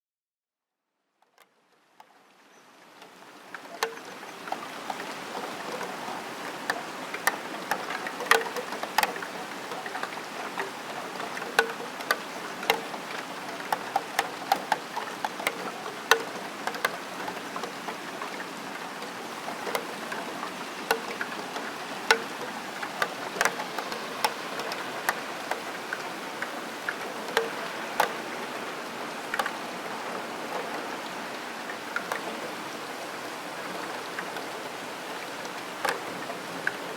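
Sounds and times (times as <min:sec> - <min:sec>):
steady rain: 0:01.5 - 0:36.9
raindrops tapping steel sill: 0:02.9 - 0:32.8, 0:33.7 - 0:36.9.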